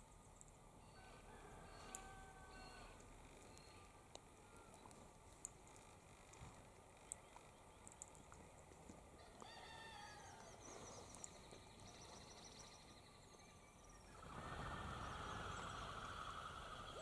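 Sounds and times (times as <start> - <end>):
faint bird calls: 10.0 - 17.0.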